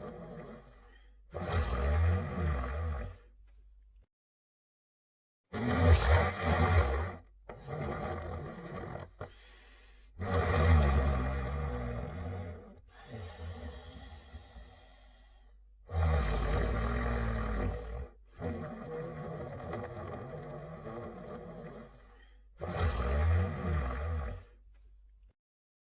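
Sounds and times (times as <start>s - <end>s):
quiet breathing: 0.0s - 1.3s, 6.8s - 22.6s
cartoon dog snoring: 0.0s - 3.4s, 5.5s - 24.6s.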